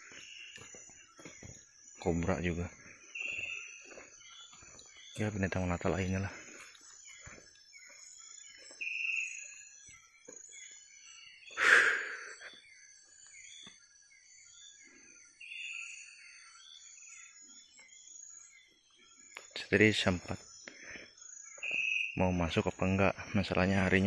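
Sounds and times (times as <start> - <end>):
high insect trilling: 0.0 - 10.8, 11.4 - 13.4, 19.4 - 24.0
short chirping calls: 0.0 - 24.0.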